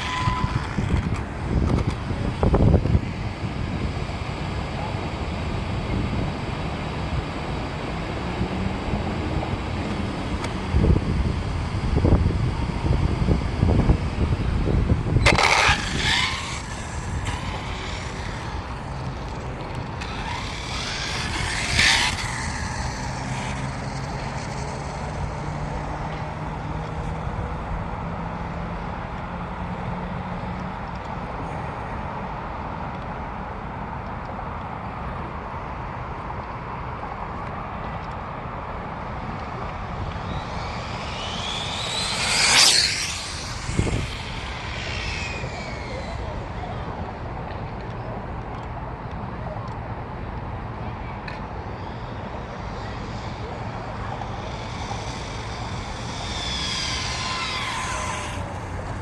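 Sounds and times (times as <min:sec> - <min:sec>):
rc buggy electric motor whining: 0:00.0 - 0:28.6, 0:39.0 - 0:47.5, 0:50.8 - 0:59.0.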